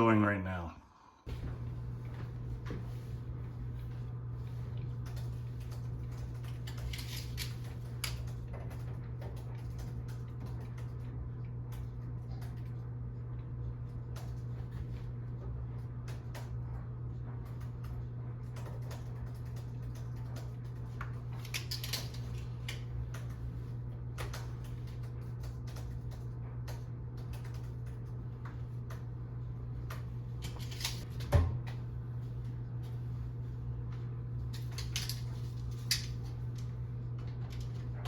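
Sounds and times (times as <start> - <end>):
steady low hum: 0.0 - 38.0.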